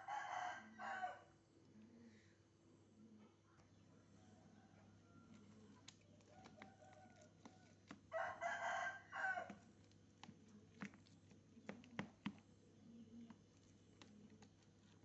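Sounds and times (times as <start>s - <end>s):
rooster crowing: 0.0s - 1.3s, 6.3s - 9.6s.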